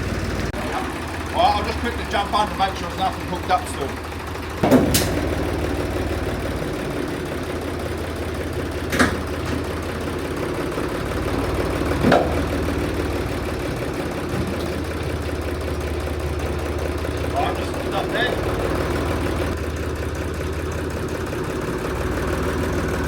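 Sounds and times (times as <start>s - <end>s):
engine idling: 0.0s - 23.0s
short metal clanks: 4.6s - 5.4s.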